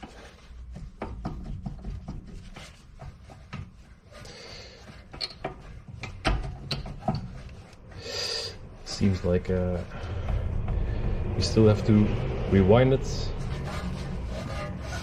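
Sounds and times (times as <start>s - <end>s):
metal scraping: 4.0s - 15.0s.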